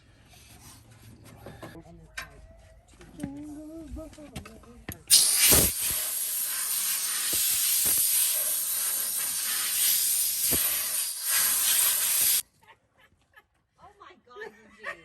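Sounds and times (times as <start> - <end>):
loud steady hiss: 5.1 - 12.4.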